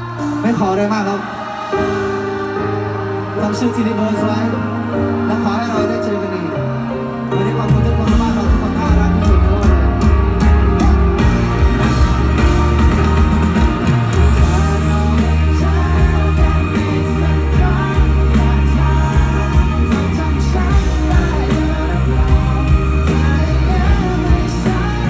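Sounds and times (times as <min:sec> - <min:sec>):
person singing: 0:00.0 - 0:25.0
rock band playing: 0:06.8 - 0:25.0.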